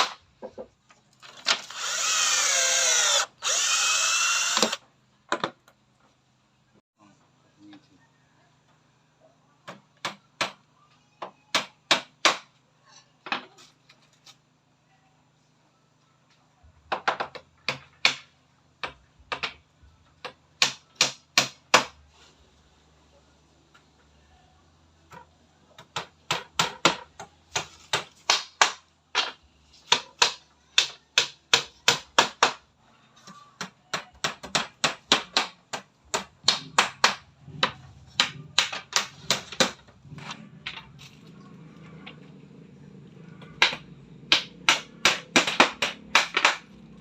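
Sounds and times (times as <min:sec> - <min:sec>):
hammer striking wood: 0:09.6 - 0:10.6, 0:11.5 - 0:12.6, 0:17.0 - 0:19.6, 0:20.2 - 0:22.0, 0:25.8 - 0:32.6, 0:33.6 - 0:39.9, 0:43.6 - 0:46.8.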